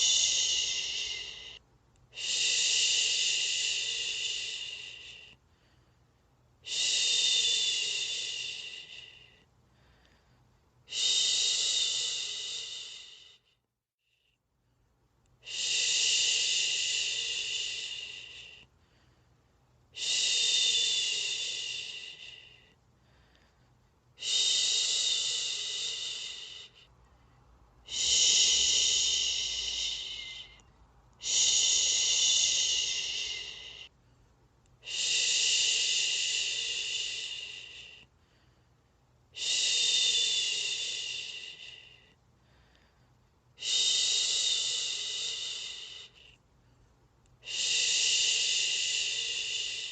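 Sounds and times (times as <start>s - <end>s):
person shushing: 0.0s - 1.6s, 27.9s - 30.6s, 31.2s - 33.9s.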